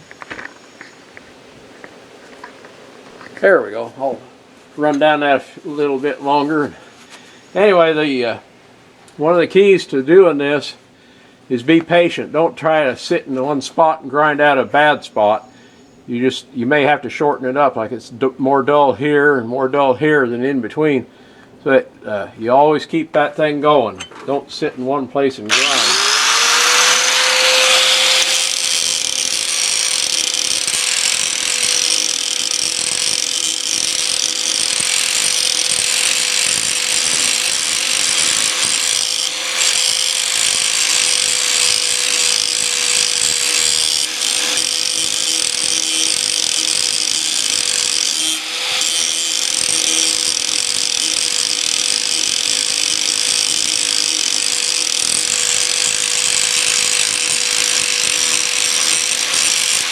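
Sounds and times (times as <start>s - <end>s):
grinder motor whine: 25.5s - 59.9s
grinding wheel on metal blade: 25.5s - 59.9s.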